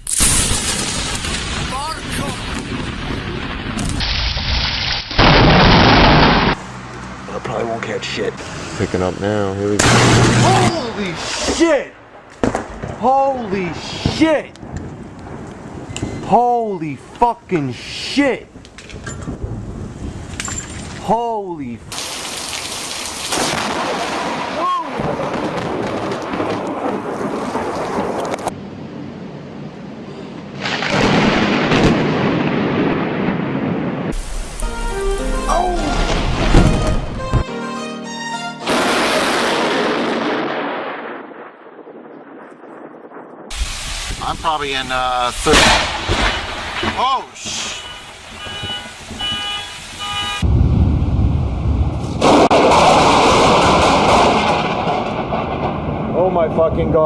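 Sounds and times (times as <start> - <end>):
thunder crack and rumble: 0.4 - 4.6, 9.8 - 16.3, 18.5 - 21.0, 23.4 - 29.8, 30.5 - 34.4, 38.7 - 49.5, 50.4 - 57.0
rain hissing: 21.9 - 28.5, 34.1 - 36.5, 43.5 - 50.4.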